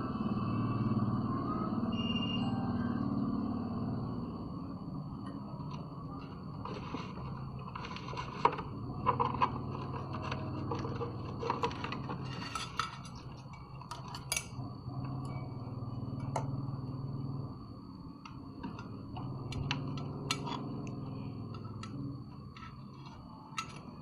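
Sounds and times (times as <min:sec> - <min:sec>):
faint high whine: 0:00.0 - 0:24.0
steady low hum: 0:00.0 - 0:24.0
metal tools clinking: 0:09.2 - 0:14.6.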